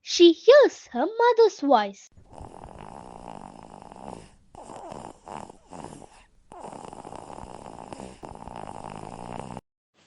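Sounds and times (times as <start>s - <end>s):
girl snoring: 2.2s - 9.6s.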